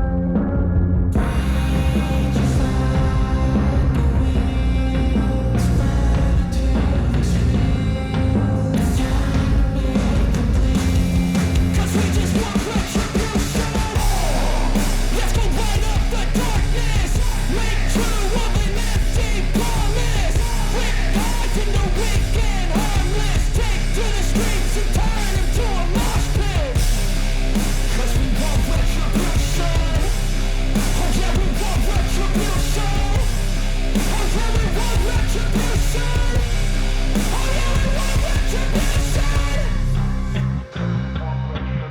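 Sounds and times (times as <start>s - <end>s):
heavy rock music: 0.0s - 41.9s
person shouting and singing: 7.6s - 26.9s, 27.8s - 40.4s.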